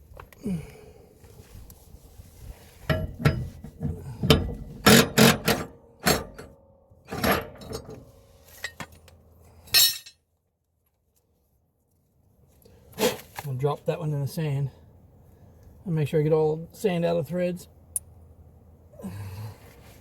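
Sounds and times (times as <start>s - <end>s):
metal clinks and clanks: 2.9s - 6.5s, 9.7s - 10.2s.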